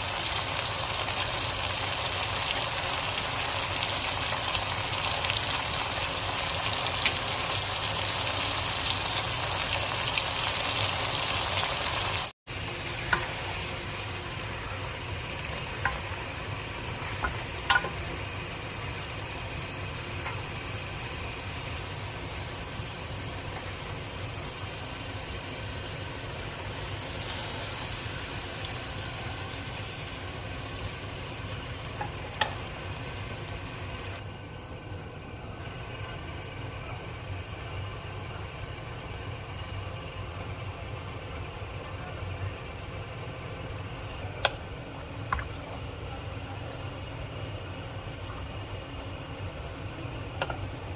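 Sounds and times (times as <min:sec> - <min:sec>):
curry sizzling in a pot: 0:00.0 - 0:34.2.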